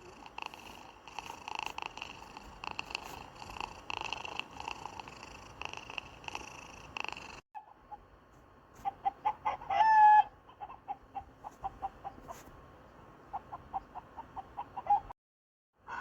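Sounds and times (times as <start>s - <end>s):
cat purring: 0.0s - 7.4s.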